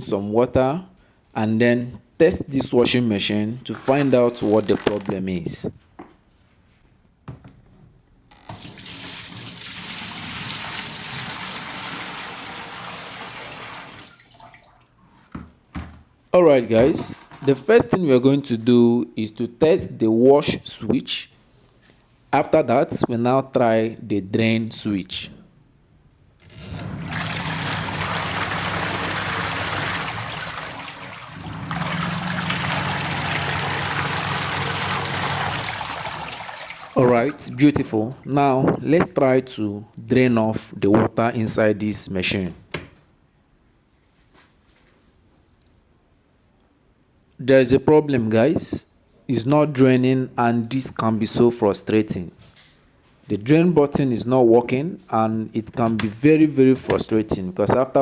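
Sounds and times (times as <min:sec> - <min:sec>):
water pouring into washing machine: 0:03.8 - 0:05.0, 0:08.5 - 0:15.0, 0:26.4 - 0:38.3.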